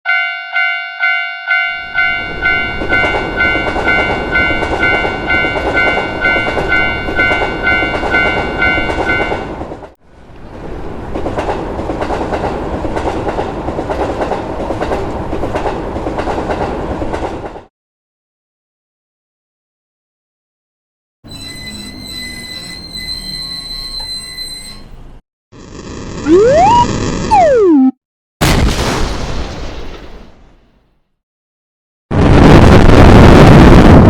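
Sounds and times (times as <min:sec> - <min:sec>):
level crossing alarm bell ringing: 0:00.1 - 0:09.5
train wheels clattering on rails: 0:02.0 - 0:10.0, 0:10.8 - 0:17.7.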